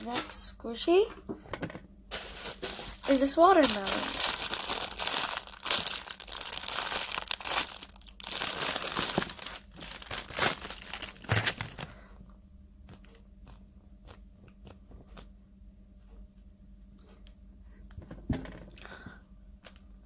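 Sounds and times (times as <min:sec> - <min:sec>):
plastic packaging crinkling: 0:02.1 - 0:12.0.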